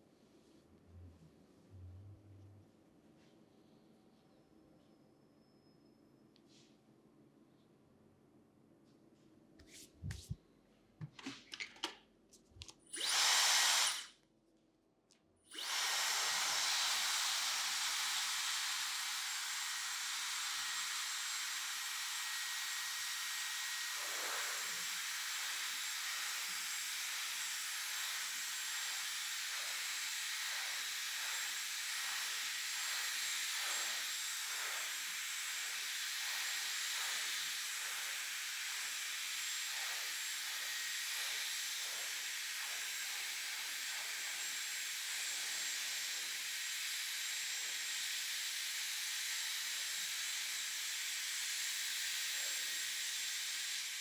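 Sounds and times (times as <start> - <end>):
hair dryer blowing: 12.9 - 14.1, 15.5 - 54.0.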